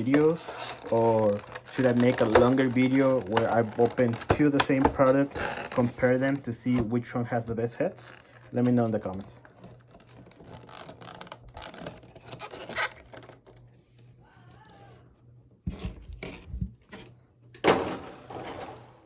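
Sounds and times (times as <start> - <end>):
box rustling and scraping: 0.0 - 7.1, 15.7 - 17.2.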